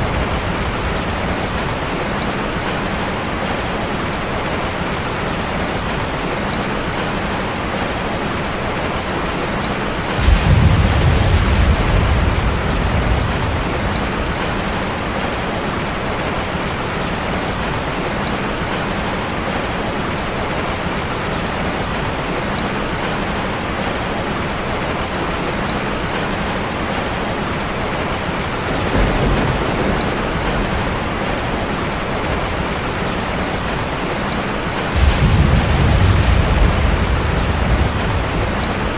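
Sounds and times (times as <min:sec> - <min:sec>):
thunder rumbling: 0:00.0 - 0:03.6, 0:10.1 - 0:16.5, 0:28.5 - 0:38.9
heavy rain: 0:00.0 - 0:38.9.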